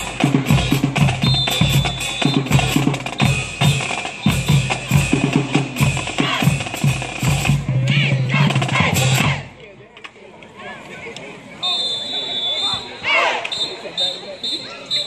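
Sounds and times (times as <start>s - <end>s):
drumline playing bass and snare: 0.0s - 9.6s.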